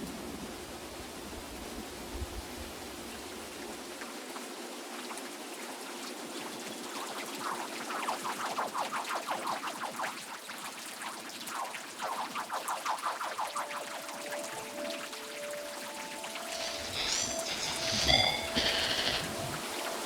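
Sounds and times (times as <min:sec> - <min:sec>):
rain-like water noise: 0:00.0 - 0:20.0
downward-sweeping chirps: 0:13.6 - 0:20.0.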